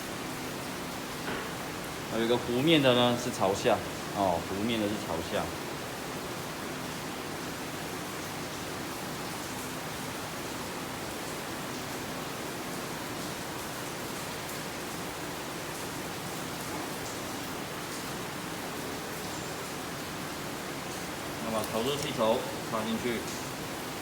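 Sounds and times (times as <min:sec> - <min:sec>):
steady hiss: 0:00.0 - 0:24.0
faint light ticks: 0:21.6 - 0:22.2.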